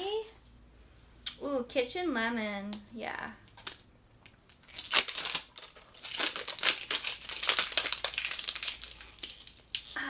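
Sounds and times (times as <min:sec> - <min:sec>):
plastic wrap crinkling: 0:04.5 - 0:10.0.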